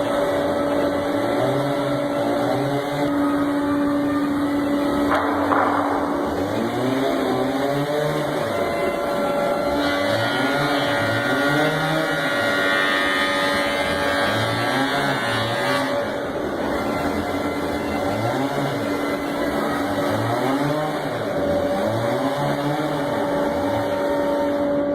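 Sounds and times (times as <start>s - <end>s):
higher whine: 0.0s - 12.8s
chainsaw engine revving: 6.2s - 24.3s.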